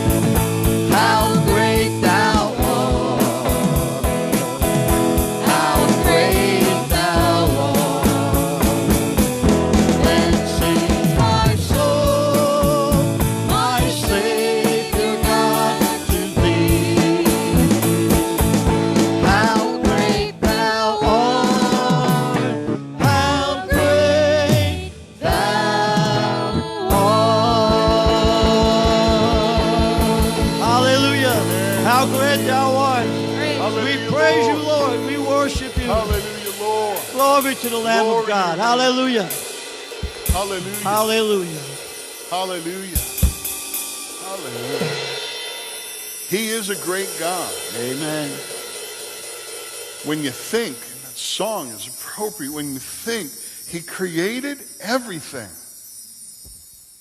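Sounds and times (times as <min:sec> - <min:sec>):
steady drum beat: 0:00.0 - 0:55.5
worship song: 0:00.0 - 0:55.8
person singing: 0:00.8 - 0:09.2, 0:09.8 - 0:18.1, 0:19.2 - 0:39.4.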